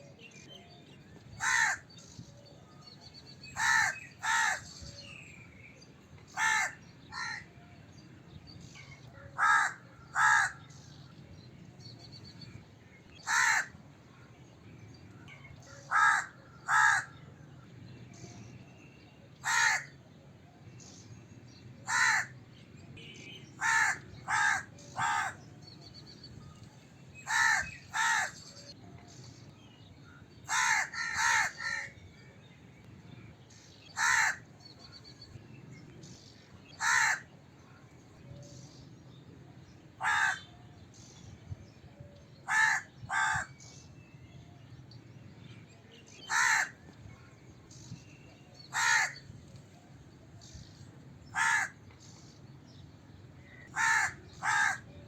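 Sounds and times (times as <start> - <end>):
crow cawing: 1.4 - 1.8, 3.6 - 4.6, 6.4 - 7.4, 9.4 - 10.6, 13.2 - 13.7, 15.9 - 17.2, 19.4 - 19.9, 21.9 - 22.3, 23.6 - 25.4, 27.3 - 28.4, 30.5 - 31.9, 34.0 - 34.4, 36.8 - 37.3, 40.0 - 40.5, 42.5 - 43.5, 46.3 - 46.8, 48.7 - 49.2, 51.4 - 51.8, 53.7 - 54.8.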